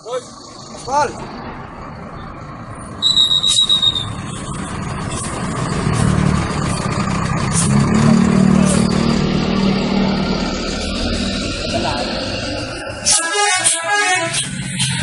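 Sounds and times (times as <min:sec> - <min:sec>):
bus engine revving: 0:00.0 - 0:15.0.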